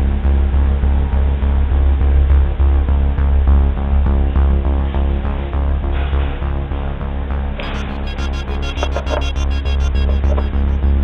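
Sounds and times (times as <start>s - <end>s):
electronic beat with heavy bass: 7.6s - 11.0s
high rhythmic percussion: 7.6s - 11.0s.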